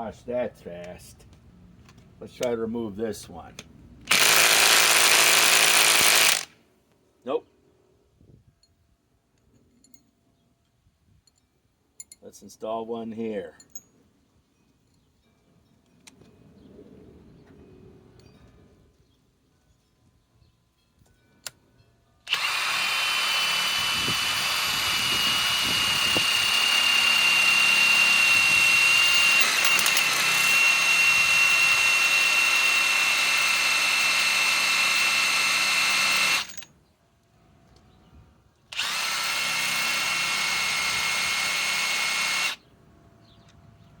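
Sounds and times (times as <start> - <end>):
impact wrench hammering: 22.3 - 36.6.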